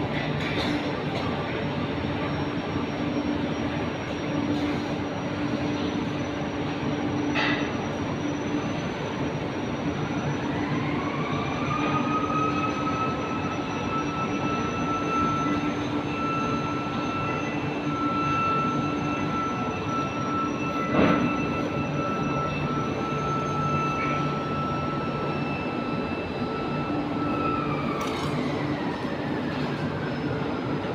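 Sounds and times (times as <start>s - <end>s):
industrial machinery noise: 0.0s - 30.9s
motor-like whine: 10.1s - 30.3s.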